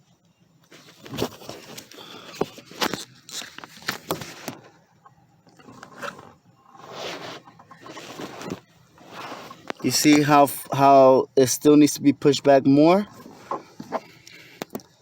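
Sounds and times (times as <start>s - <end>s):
scrapes on pedal bracket: 5.8s - 10.3s.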